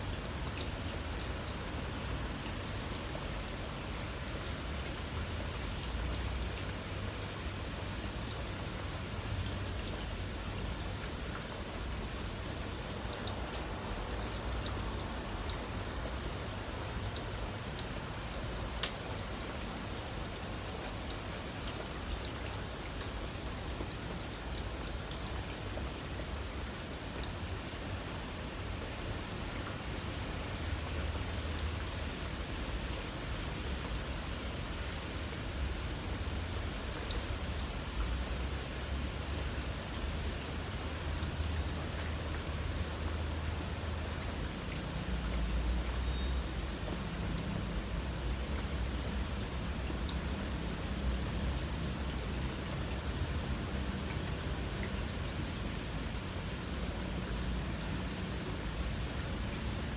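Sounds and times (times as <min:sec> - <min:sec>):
light rain hiss: 0:00.0 - 0:59.9
insects trilling: 0:11.8 - 0:59.0.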